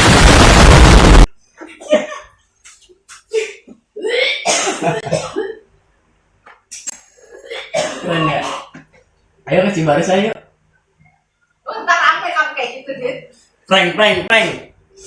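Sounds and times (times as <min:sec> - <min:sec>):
loud distorted noise blast: 0:00.0 - 0:01.3
person fake coughing: 0:03.4 - 0:05.5, 0:07.3 - 0:08.8.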